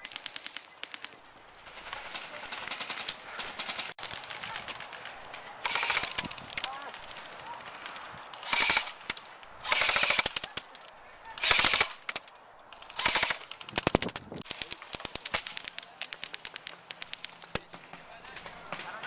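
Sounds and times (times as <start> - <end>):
airsoft guns firing bursts: 0.0 - 19.0
scattered airsoft shots: 5.6 - 7.2, 7.8 - 10.7, 12.8 - 19.0.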